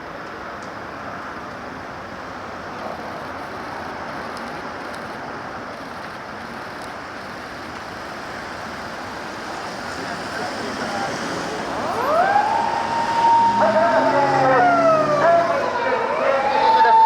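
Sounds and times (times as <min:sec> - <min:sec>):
road traffic noise: 0:00.0 - 0:17.0.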